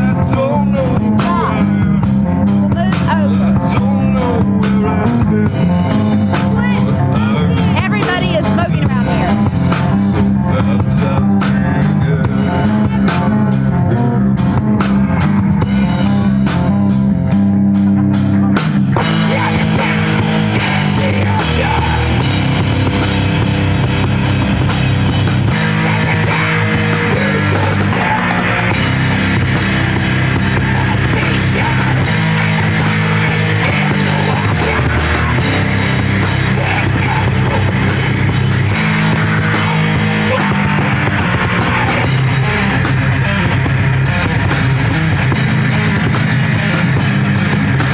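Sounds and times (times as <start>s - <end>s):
drum hits: 0.0s - 47.9s
heavy metal band playing: 0.0s - 47.9s.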